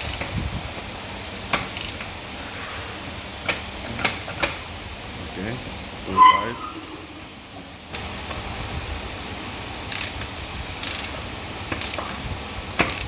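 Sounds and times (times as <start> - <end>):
ratchet wrench clicking: 0.0 - 0.3, 1.7 - 2.1, 9.9 - 12.2, 12.8 - 13.0.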